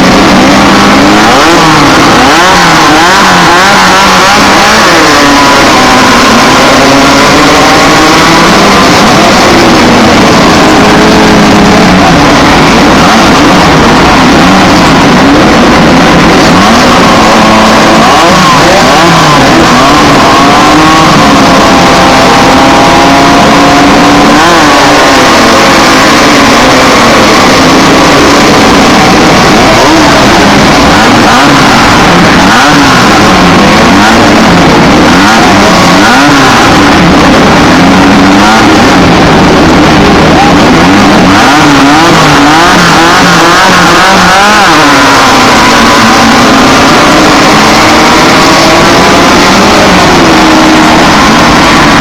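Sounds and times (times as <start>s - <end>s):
race car engines revving: 0.0s - 52.0s.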